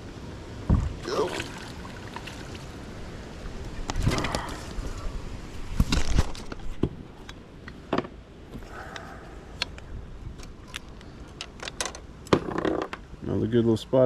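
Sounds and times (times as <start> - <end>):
fishing tackle knocks and rattles: 10.6 - 13.0.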